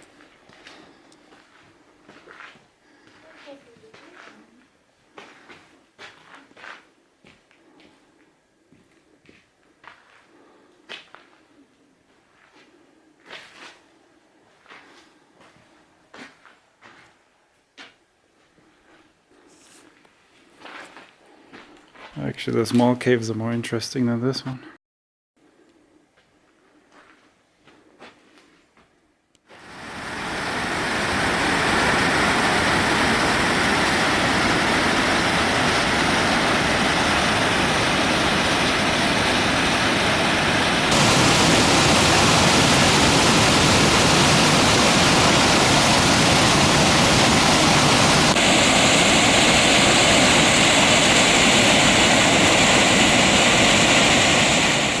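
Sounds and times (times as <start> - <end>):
waterfall rushing: 29.6 - 55.0.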